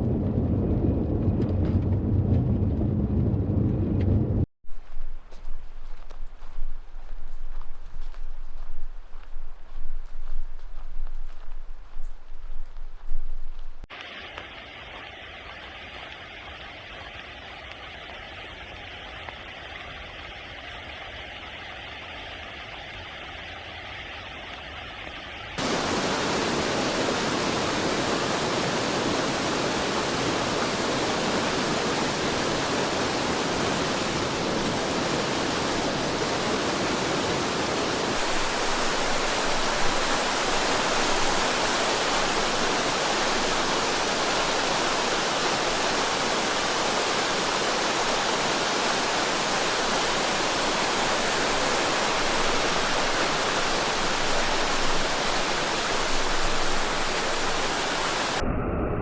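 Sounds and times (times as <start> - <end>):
river rushing: 25.6 - 58.4.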